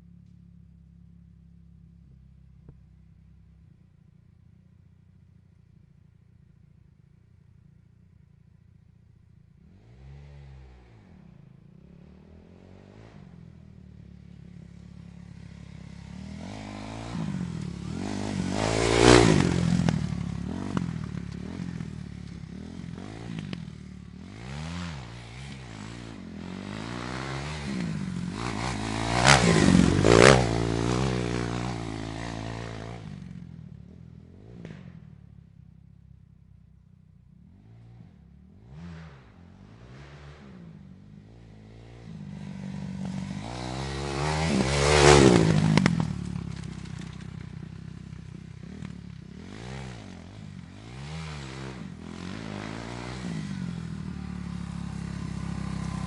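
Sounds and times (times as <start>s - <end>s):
motorcycle engine revving: 7.6s - 56.0s.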